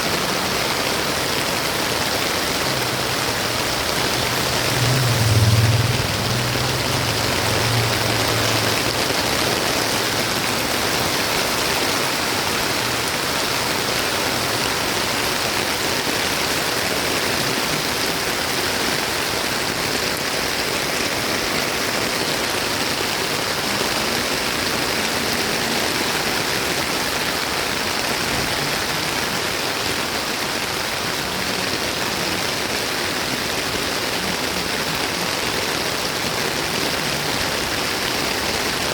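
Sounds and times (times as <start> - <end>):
heavy rain falling: 0.0 - 38.9
low rumble: 3.4 - 9.4.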